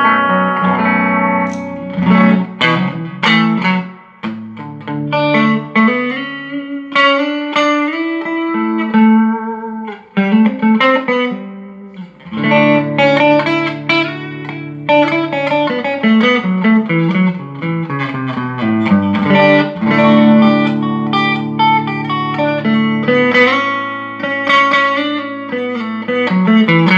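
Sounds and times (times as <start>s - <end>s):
electric guitar chords and notes: 0.0s - 26.9s.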